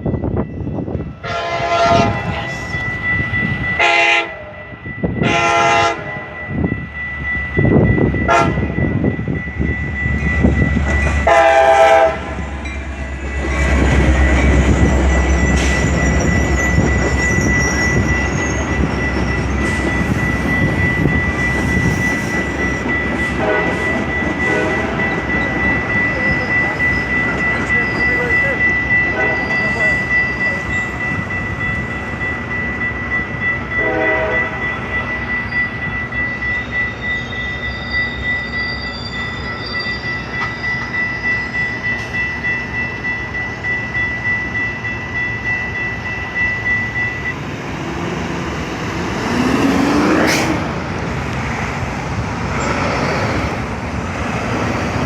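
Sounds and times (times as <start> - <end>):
diesel locomotive: 0.0 - 55.0
train horn blast: 1.2 - 2.6, 3.8 - 4.6, 5.2 - 6.4, 8.3 - 8.7, 11.2 - 12.4, 23.4 - 23.9, 24.5 - 24.9, 33.8 - 34.6
steady high-pitched tone: 2.0 - 52.6.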